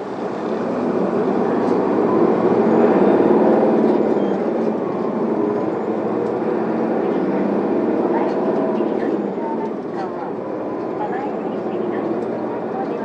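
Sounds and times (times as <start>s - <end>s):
bus diesel engine: 0.0s - 13.0s.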